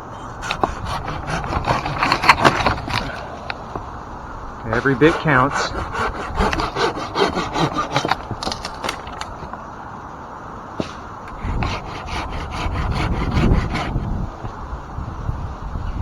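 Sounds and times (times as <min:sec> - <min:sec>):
handsaw cutting wood: 0:00.2 - 0:03.6, 0:04.6 - 0:09.1, 0:11.3 - 0:14.2.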